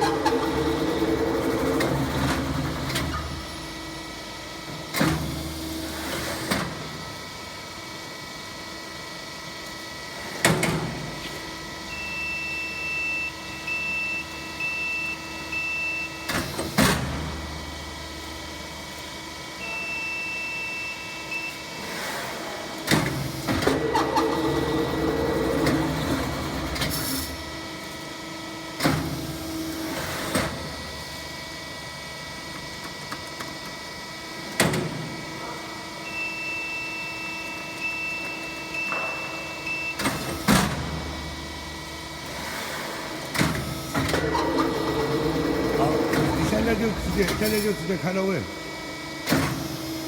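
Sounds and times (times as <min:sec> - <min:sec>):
machine hum: 0:00.0 - 0:04.7, 0:23.6 - 0:27.6, 0:38.9 - 0:50.0.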